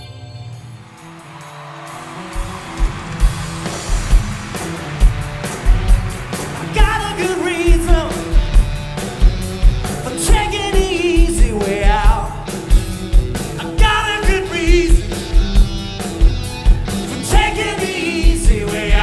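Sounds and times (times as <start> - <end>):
rock and roll band playing: 0.0 - 19.0
man singing with vibrato: 6.6 - 8.6, 10.0 - 12.6, 13.5 - 15.4, 17.0 - 19.0.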